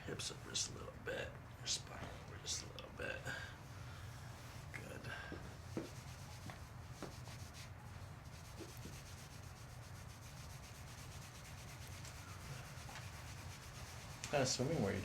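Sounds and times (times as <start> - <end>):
steady low hum: 0.0 - 15.0
rubbing against table cover: 4.4 - 15.0.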